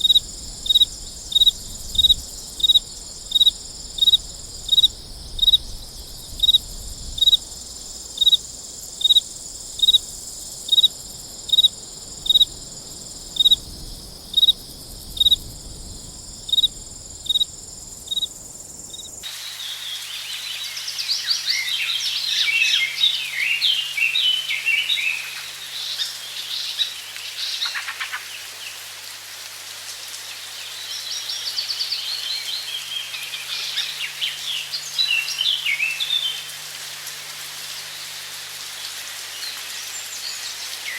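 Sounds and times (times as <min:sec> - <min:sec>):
high insect drone: 0:00.0 - 0:27.0
cricket chirping: 0:00.0 - 0:28.2
birds singing in chorus: 0:19.8 - 0:28.4.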